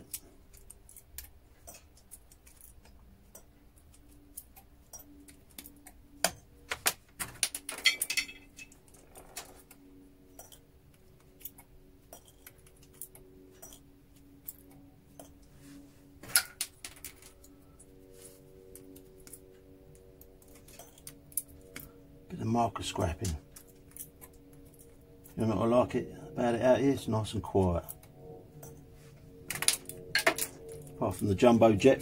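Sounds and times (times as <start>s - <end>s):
small metal clicks and clinks: 0.0s - 6.5s, 7.4s - 15.5s, 18.6s - 22.0s.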